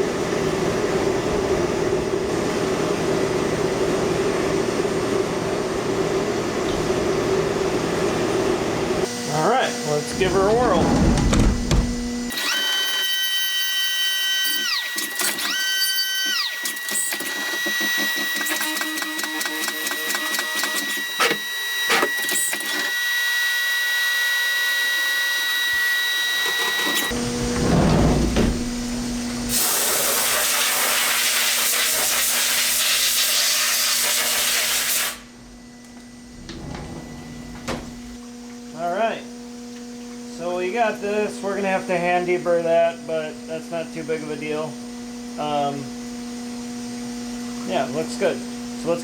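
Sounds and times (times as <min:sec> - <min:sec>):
mill spindle whine: 0:00.0 - 0:29.6, 0:35.2 - 0:49.0
low rumble: 0:10.1 - 0:12.3.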